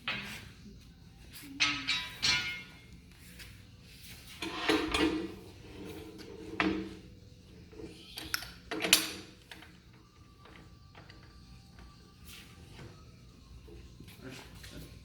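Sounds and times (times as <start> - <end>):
hand tools clanking on steel pipe: 1.6 - 2.8.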